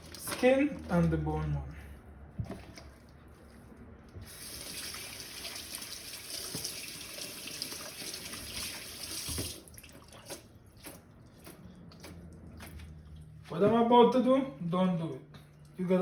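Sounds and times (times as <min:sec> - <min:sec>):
tap running into a sink: 0:04.4 - 0:09.6.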